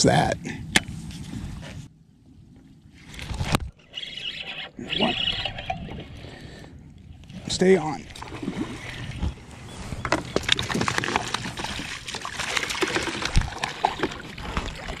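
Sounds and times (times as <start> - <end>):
water splashing against a kayak: 7.3 - 15.0.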